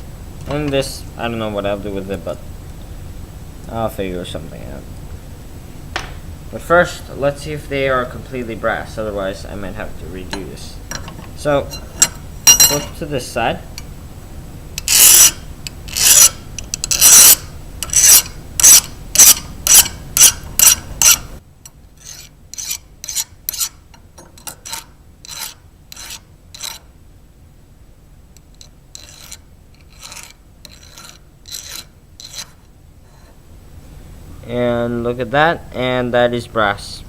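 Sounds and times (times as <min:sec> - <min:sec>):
filing metal rasping strokes: 0:14.8 - 0:21.3, 0:22.0 - 0:23.8, 0:24.4 - 0:26.9, 0:28.6 - 0:33.4.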